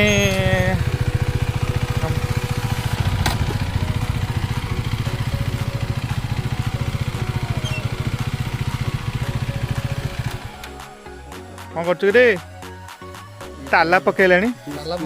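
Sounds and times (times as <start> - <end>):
motorcycle engine idling: 0.0 - 12.0.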